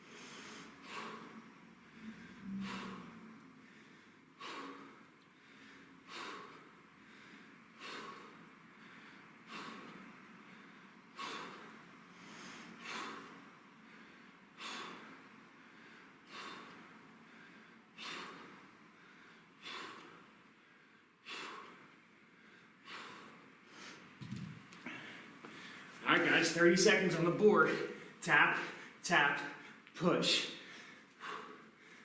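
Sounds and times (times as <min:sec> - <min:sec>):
man exhaling forcefully: 0:02.0 - 0:05.0, 0:11.2 - 0:11.7, 0:18.0 - 0:18.6.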